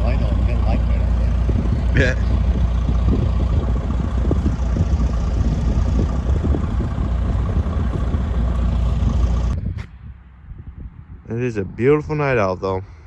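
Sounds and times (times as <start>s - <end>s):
vehicle engine idling: 0.0s - 9.6s.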